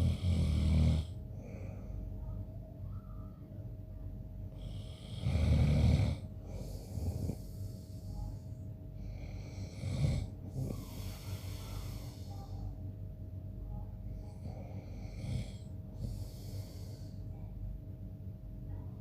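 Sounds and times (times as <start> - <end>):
man snoring: 0.0 - 1.2, 4.6 - 7.6, 9.0 - 12.3, 14.4 - 17.1
breathy hiss: 4.6 - 12.8, 14.3 - 17.4.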